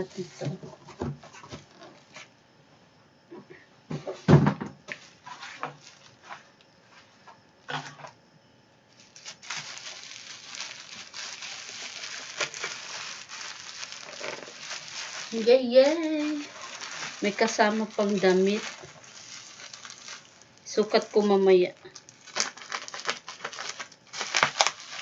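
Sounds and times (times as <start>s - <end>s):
bubble wrap crinkling: 1.6s - 2.2s, 5.0s - 6.4s, 8.9s - 25.0s.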